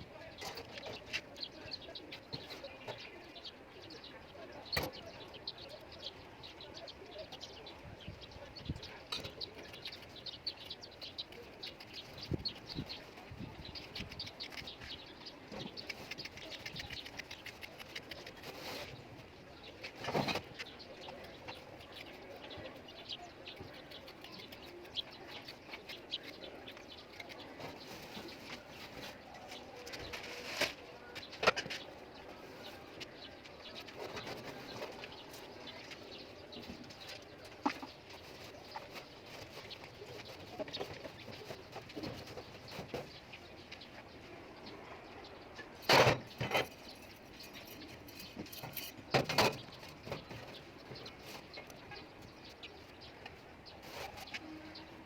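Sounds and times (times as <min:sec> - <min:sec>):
small birds chirping: 0:00.0 - 0:55.0
scraping rustle: 0:11.7 - 0:22.2, 0:23.8 - 0:43.4, 0:53.6 - 0:55.0.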